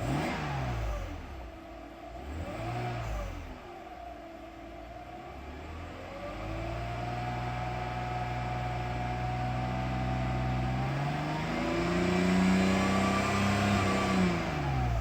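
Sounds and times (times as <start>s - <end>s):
car engine revving: 0.0s - 1.4s, 2.2s - 3.6s, 9.6s - 15.0s.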